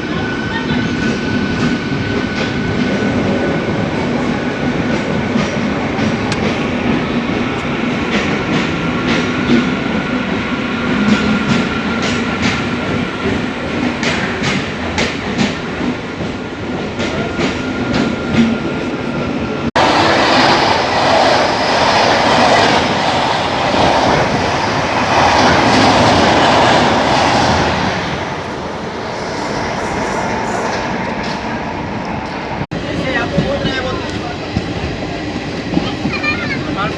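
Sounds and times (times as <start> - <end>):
train rushing at speed: 0.0 - 36.9
train wheels clicking over rail joints: 10.9 - 18.6.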